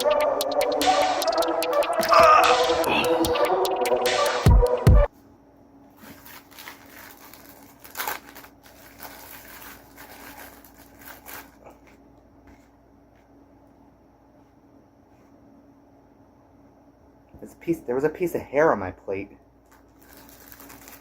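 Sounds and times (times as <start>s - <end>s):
food packaging crinkling: 5.9s - 12.0s, 19.6s - 21.0s.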